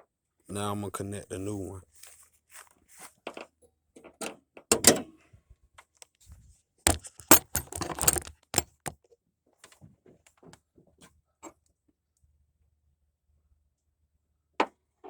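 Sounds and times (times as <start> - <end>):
plastic parts clicking and rattling: 6.9 - 8.9.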